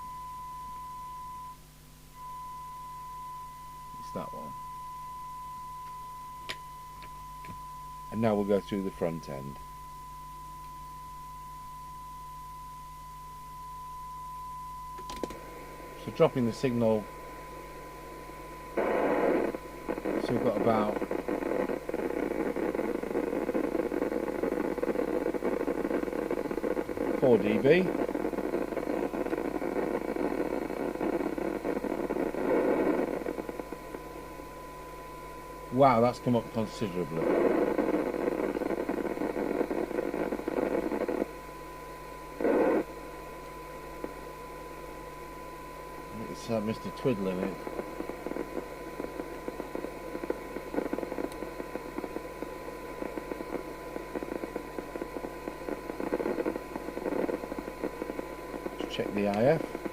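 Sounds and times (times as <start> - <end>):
radio static hiss: 0.0 - 0.4, 3.1 - 9.8, 11.3 - 59.9
steady test tone: 0.0 - 59.9.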